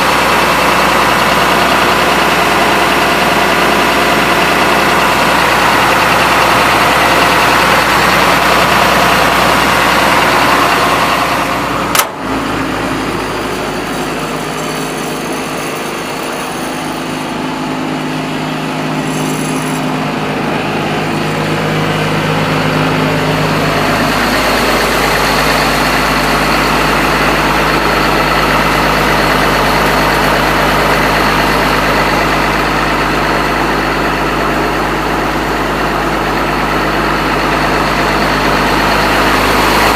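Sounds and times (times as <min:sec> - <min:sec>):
excavator diesel engine running: 0:00.0 - 0:39.9
sharp click: 0:11.9 - 0:12.2.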